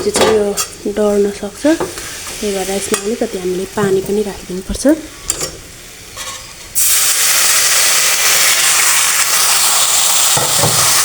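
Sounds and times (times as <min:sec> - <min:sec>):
loud sizzling hiss: 0:01.9 - 0:11.0
water poured into hot pan: 0:06.7 - 0:11.0.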